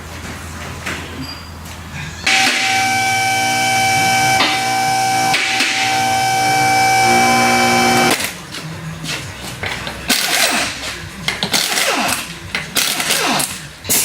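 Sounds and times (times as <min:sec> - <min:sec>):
tools clicking and knocking: 0:09.6 - 0:14.0.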